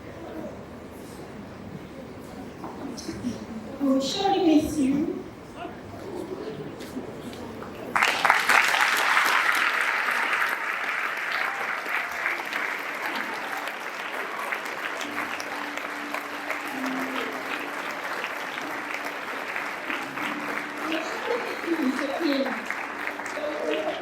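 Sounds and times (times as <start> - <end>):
audience clapping: 7.3 - 24.0.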